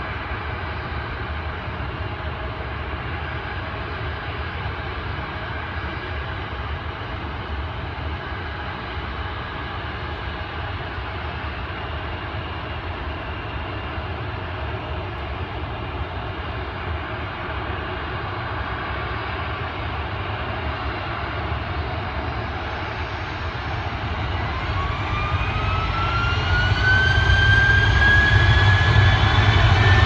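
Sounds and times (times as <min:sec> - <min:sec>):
jet engines rumbling: 0:00.0 - 0:30.0
rising engine whine: 0:21.8 - 0:30.0.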